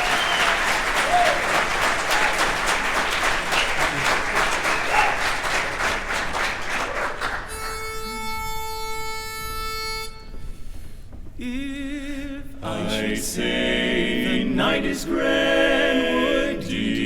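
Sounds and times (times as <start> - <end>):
audience applause: 0.0 - 7.6.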